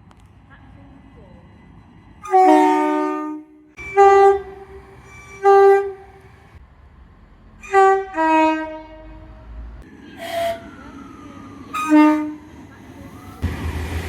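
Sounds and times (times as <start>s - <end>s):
train horn blasts: 2.2s - 6.2s, 7.6s - 9.4s, 10.2s - 10.7s, 11.7s - 12.5s.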